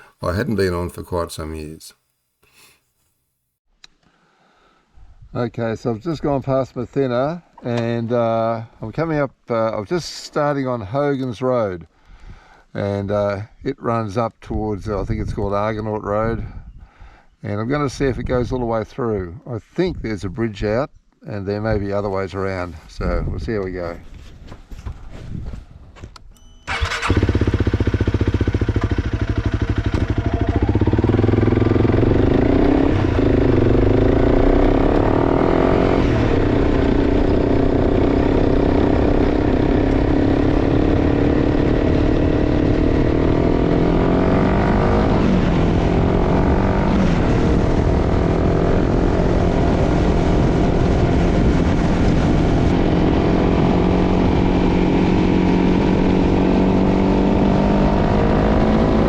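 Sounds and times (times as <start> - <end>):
motorcycle engine revving: 26.7 - 59.0.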